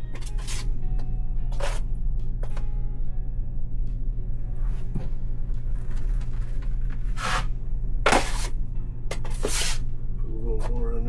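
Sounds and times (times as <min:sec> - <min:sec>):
steady low hum: 0:00.0 - 0:11.0
drywall knife scraping compound: 0:00.2 - 0:00.7, 0:01.5 - 0:01.8, 0:07.1 - 0:07.5, 0:08.1 - 0:08.6, 0:09.2 - 0:09.8.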